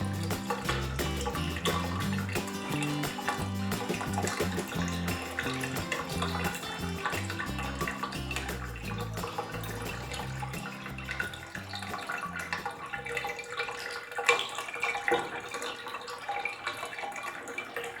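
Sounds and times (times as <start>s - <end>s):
background music with low bass: 0.0s - 13.2s
tap water splashing into bathtub: 0.0s - 18.0s.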